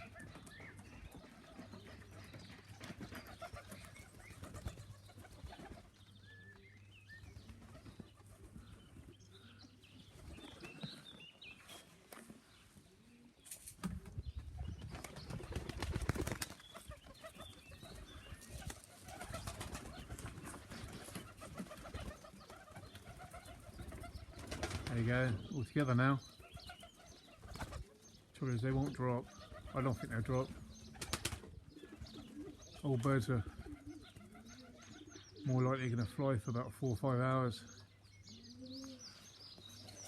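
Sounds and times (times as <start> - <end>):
pigeons cooing: 0.0 - 40.0
pigeon wings flapping: 14.8 - 16.9, 18.5 - 24.9, 30.9 - 31.5.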